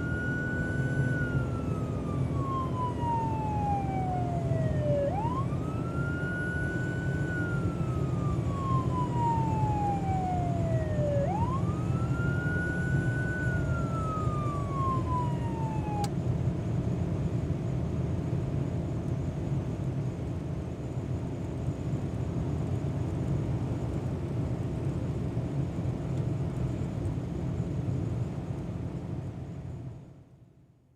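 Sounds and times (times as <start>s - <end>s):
police siren wailing: 0.0s - 16.1s
car engine and road noise: 0.0s - 20.3s.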